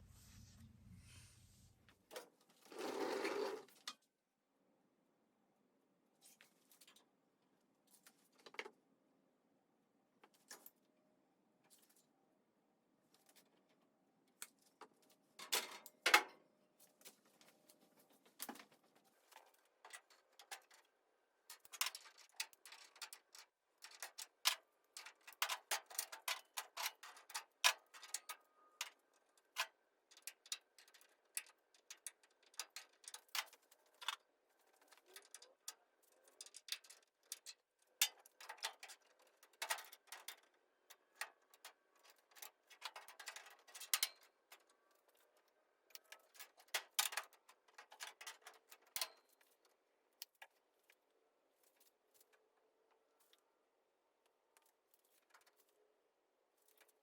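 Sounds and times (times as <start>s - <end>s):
light clicks and taps of tools: 13.1s - 53.5s, 54.2s - 55.9s.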